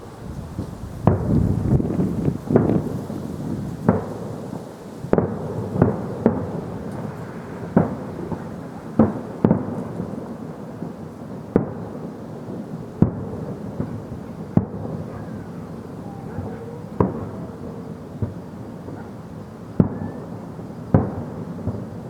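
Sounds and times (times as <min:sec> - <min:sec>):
distant fireworks bangs: 0:00.0 - 0:22.0.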